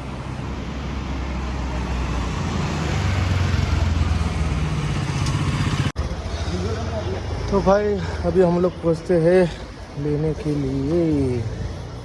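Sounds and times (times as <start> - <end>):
wind and road noise: 0.0 - 12.0
motorcycle engine running: 3.2 - 7.4.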